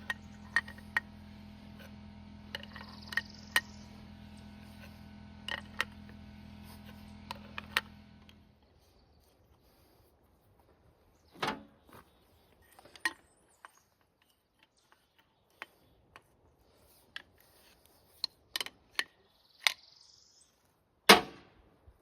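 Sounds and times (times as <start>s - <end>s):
metal clicks and clanks: 0.0s - 1.1s, 5.4s - 6.2s.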